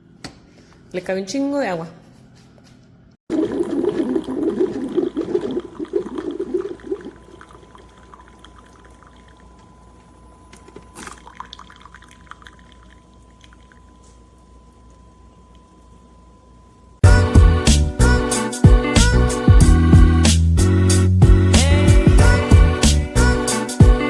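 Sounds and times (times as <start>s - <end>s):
liquid pouring and gurgling: 3.3s - 9.9s, 10.7s - 14.9s.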